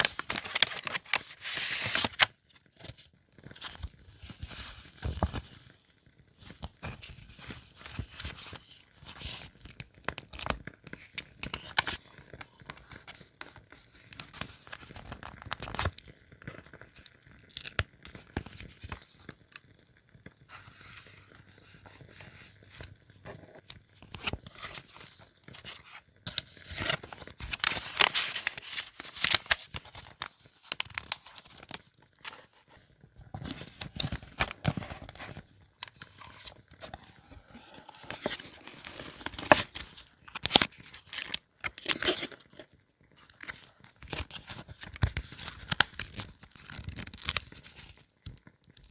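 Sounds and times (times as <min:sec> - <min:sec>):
paper rustling and tearing: 0:00.0 - 0:02.3.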